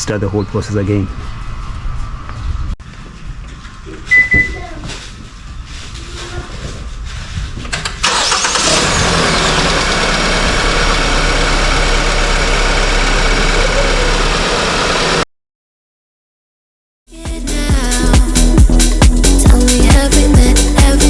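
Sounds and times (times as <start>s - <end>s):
car engine starting and idling: 7.8s - 15.2s.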